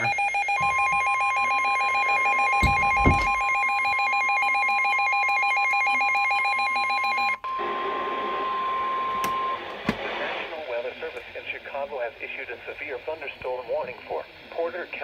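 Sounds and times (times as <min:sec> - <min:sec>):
steady alarm tone: 0:00.0 - 0:09.6
warbling electronic alarm: 0:00.0 - 0:09.6.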